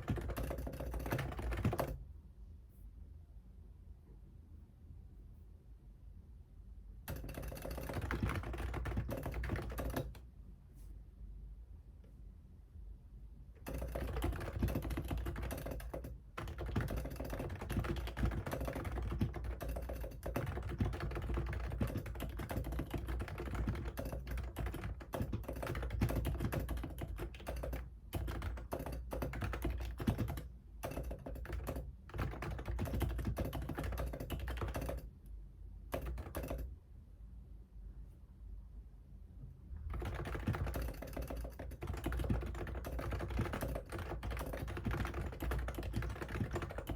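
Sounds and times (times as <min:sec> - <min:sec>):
computer keyboard typing: 0:00.0 - 0:02.0, 0:07.1 - 0:10.2, 0:13.6 - 0:35.1, 0:35.9 - 0:36.7, 0:39.8 - 0:46.9.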